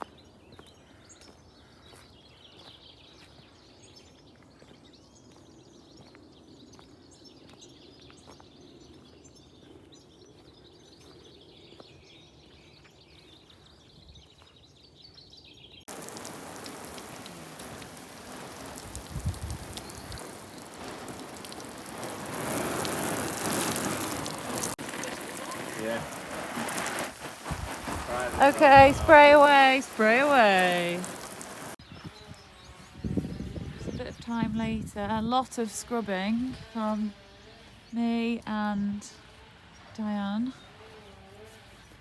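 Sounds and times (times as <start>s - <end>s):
birds chirping: 0.0s - 42.0s
water spraying: 15.9s - 31.8s.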